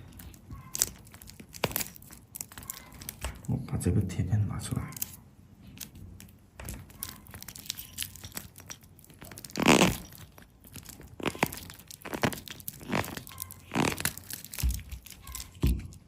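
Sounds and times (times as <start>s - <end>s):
sticker being peeled off: 4.9s - 15.6s
tearing rasp: 6.9s - 15.6s.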